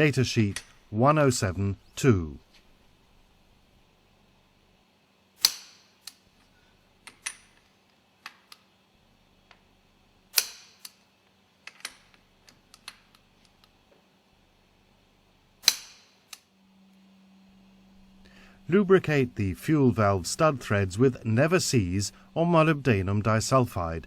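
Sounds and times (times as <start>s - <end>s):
loud sharp metal clanks: 5.4s - 6.0s, 10.4s - 10.8s, 15.6s - 16.2s.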